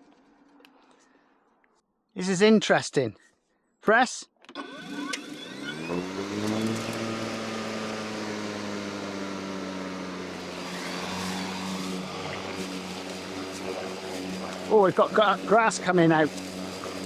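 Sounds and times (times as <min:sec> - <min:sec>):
electric lawnmower motor whine: 0:04.5 - 0:17.0.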